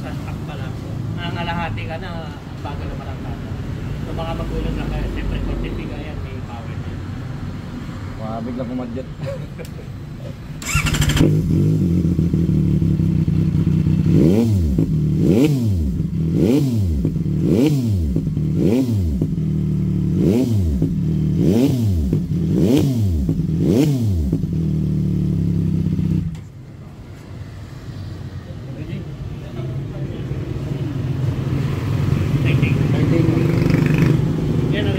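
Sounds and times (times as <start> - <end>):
motorcycle engine revving: 10.6 - 26.4, 30.9 - 34.9.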